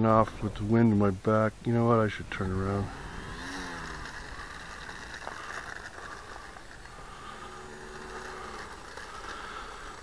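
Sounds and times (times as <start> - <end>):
faint low hum: 0.0 - 10.0
outdoor background noise: 0.0 - 10.0.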